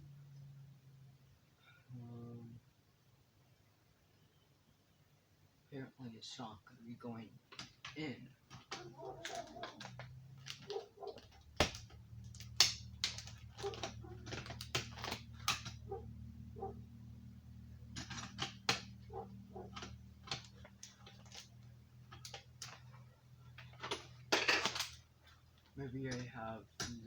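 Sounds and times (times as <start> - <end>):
plastic clicks and scrapes: 7.5 - 16.0.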